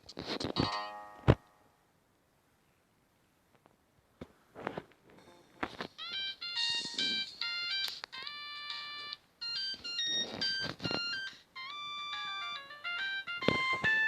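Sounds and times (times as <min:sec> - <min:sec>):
polyphonic phone ringtone: 0:06.0 - 0:14.0.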